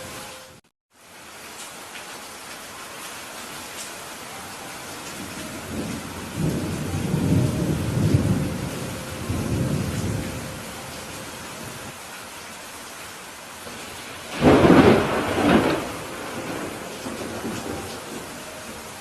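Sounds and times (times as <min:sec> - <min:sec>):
rain on a roof: 0:00.0 - 0:19.0
rolling thunder: 0:05.2 - 0:11.9, 0:13.7 - 0:18.9.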